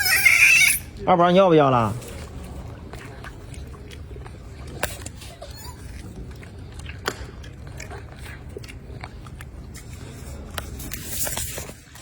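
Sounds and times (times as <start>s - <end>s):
monkeys crunching food: 0.0s - 12.0s.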